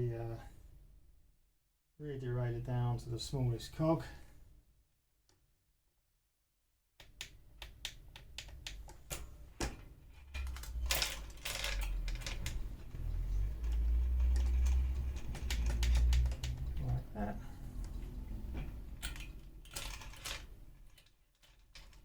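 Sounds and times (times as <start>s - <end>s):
bike derailleur clicking: 10.4s - 16.8s.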